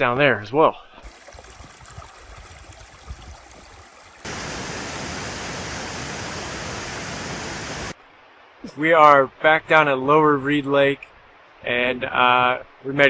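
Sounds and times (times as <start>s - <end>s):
faint outdoor hiss: 0.0s - 13.0s
mountain water rushing: 1.0s - 8.0s.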